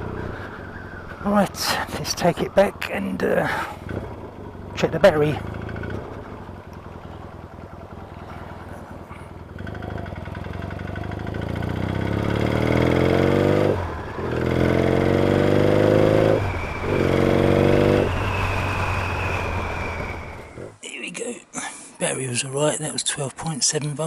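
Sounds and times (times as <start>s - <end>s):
motorcycle engine revving through gears: 2.8s - 20.7s.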